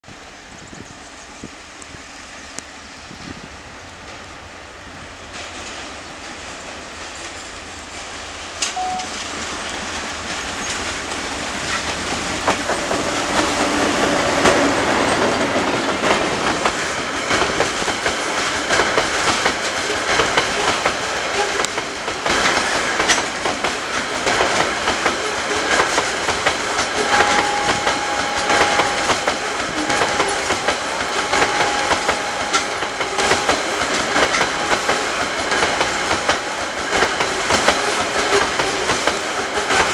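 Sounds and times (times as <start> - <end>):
train rolling past: 0.0 - 39.9
thin steady squeal: 27.0 - 35.1.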